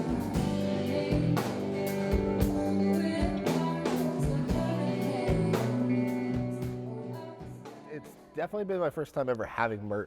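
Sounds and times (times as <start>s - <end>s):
rock band playing: 0.0s - 8.3s.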